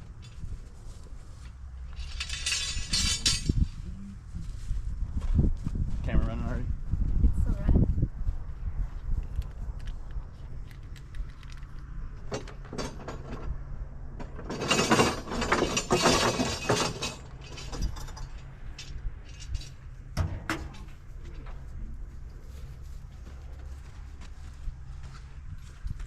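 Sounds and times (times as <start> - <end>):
small hardware rattling: 1.9 - 3.6, 14.2 - 21.0
metal parts clinking: 1.9 - 3.7, 14.4 - 20.9.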